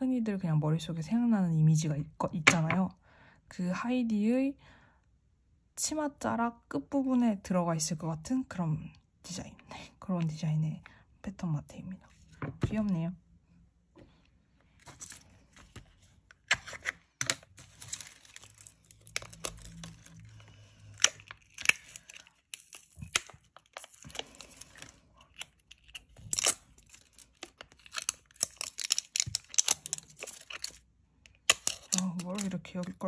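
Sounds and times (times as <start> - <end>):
paper crinkling: 14.7 - 33.0
tape peeling and tearing: 16.4 - 30.8.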